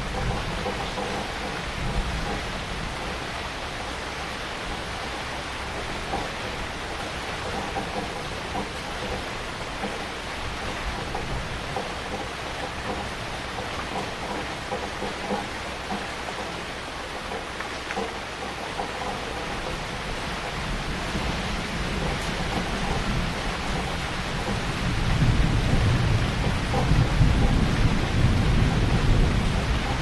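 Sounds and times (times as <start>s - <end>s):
low rumble of thunder: 0.0s - 4.0s, 19.3s - 30.0s
heavy rain: 0.0s - 30.0s.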